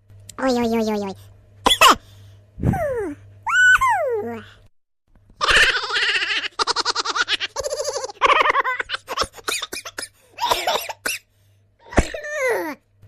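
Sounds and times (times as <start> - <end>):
person laughing hard: 5.4 - 9.8.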